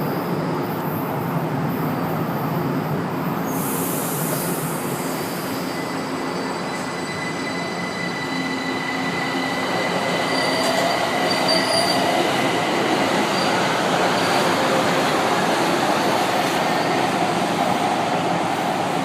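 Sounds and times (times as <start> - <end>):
train rumbling: 0.0 - 19.0
high wheel squeal: 5.0 - 12.2.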